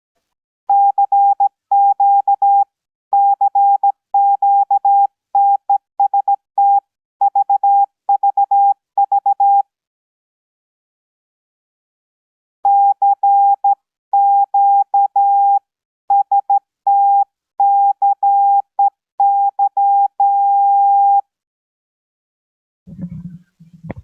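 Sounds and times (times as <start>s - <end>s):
morse code beeps: 12.7s - 21.2s.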